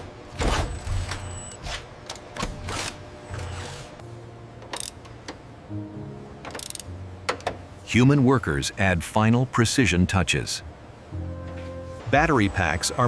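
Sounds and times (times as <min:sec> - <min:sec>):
background music: 0:04.0 - 0:13.0
mechanical clicks and clanks: 0:04.6 - 0:05.4, 0:06.4 - 0:07.6.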